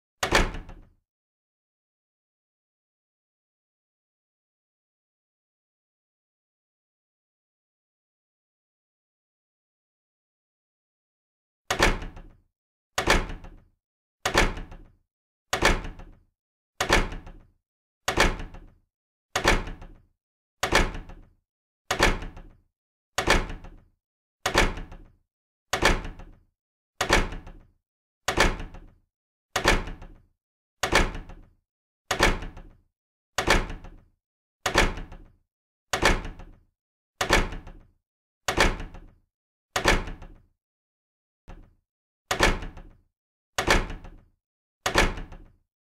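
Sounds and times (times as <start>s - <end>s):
door shutting: 0.2s - 0.8s, 11.7s - 12.3s, 13.0s - 13.6s, 14.2s - 14.9s, 15.5s - 16.2s, 16.8s - 17.4s, 18.1s - 18.7s, 19.4s - 20.0s, 20.6s - 21.3s, 24.4s - 25.1s, 27.0s - 27.6s, 28.3s - 28.9s, 29.6s - 30.1s, 30.8s - 31.4s, 32.1s - 32.7s, 33.4s - 34.0s, 39.8s - 40.4s, 44.8s - 45.5s.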